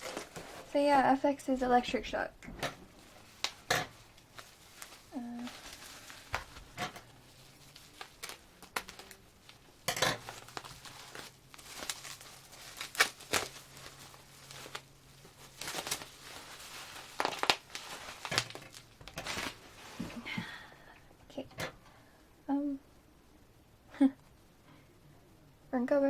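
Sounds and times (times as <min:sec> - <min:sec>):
plastic packaging crinkling and tearing: 0:03.0 - 0:20.1.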